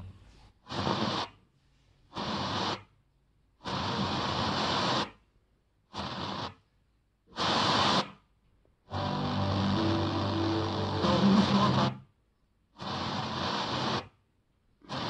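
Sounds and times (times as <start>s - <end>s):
radio static bursts: 8.9s - 12.0s, 12.8s - 14.1s.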